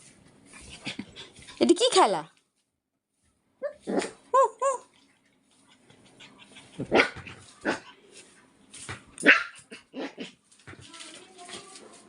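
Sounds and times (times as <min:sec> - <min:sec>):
puppy barks: 0:06.8 - 0:08.0, 0:09.2 - 0:10.4.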